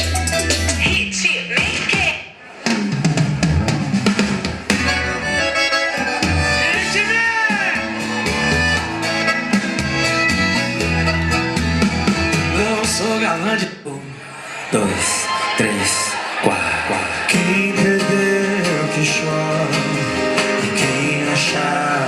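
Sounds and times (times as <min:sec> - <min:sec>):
music with drum beat and bass: 0:00.0 - 0:13.1, 0:17.4 - 0:21.7.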